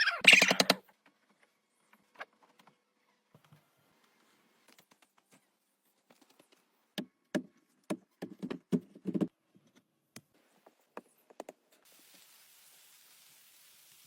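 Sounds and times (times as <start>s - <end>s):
steady hiss: 11.9s - 14.0s.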